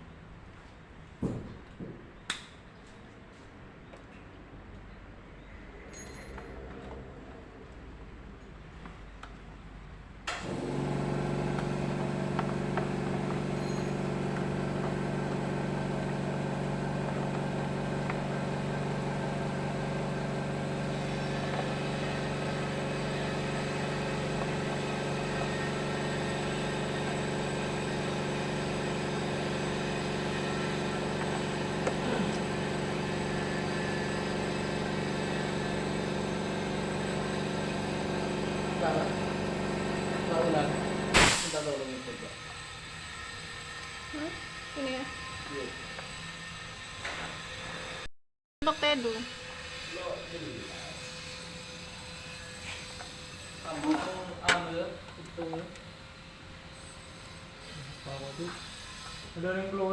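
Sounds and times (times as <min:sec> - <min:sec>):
car engine idling: 0:10.6 - 0:41.1.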